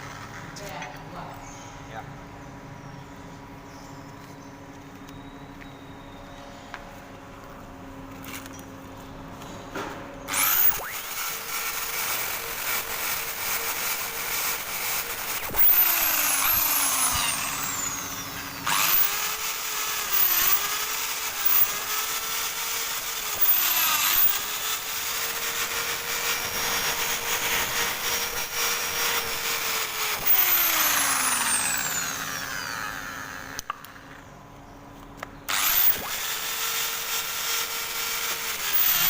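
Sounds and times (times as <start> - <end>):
drill wire brush scouring metal: 10.3 - 33.6, 35.5 - 39.0.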